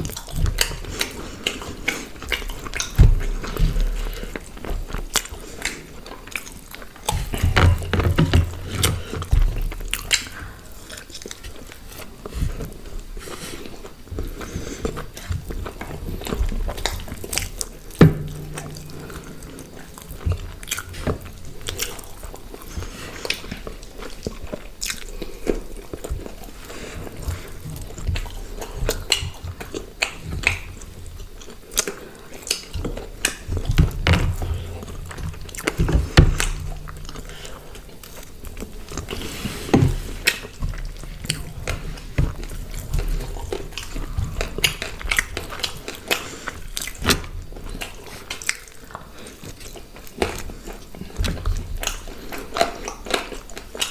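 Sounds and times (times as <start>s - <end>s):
people chewing food: 0.0s - 53.9s
low thuds: 16.2s - 22.0s, 33.6s - 39.1s.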